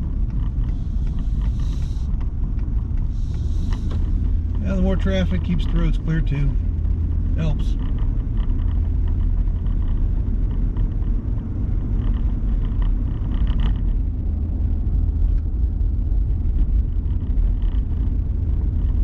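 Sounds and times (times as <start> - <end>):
vehicle engine and road rumble: 0.0 - 19.0.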